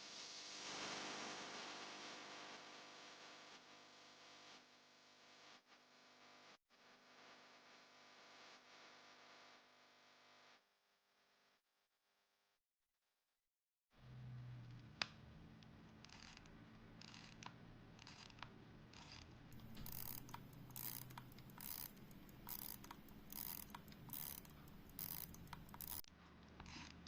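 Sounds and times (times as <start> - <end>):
pocket watch winding clicks: 16.1 - 18.4, 19.0 - 26.9.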